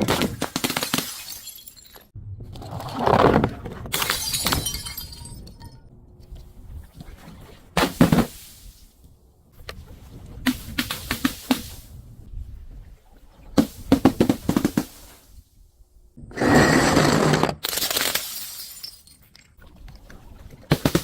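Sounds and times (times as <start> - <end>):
glass bottles being crushed: 0.2 - 2.1, 3.9 - 5.8, 17.4 - 19.6.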